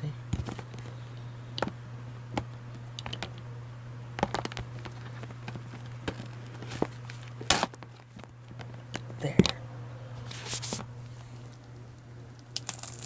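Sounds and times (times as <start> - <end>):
low electrical hum: 0.0 - 13.0
plastic case and wrap crinkling: 4.1 - 9.6, 10.2 - 11.8.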